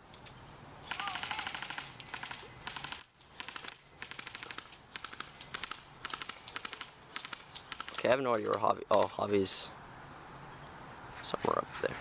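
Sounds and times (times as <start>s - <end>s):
airsoft gun bursts: 0.9s - 9.3s.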